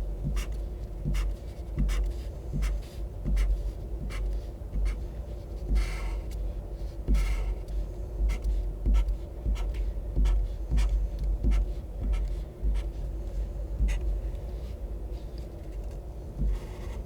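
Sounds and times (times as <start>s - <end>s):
highlighter scratching on paper: 0.3s - 15.3s, 16.4s - 17.0s.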